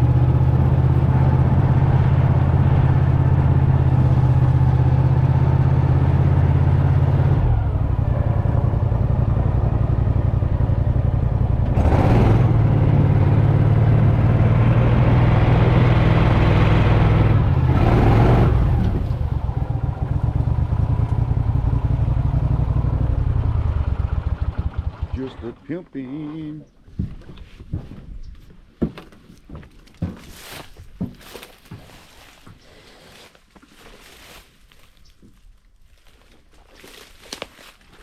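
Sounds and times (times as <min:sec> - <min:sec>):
small engine running under load: 0:00.0 - 0:25.6.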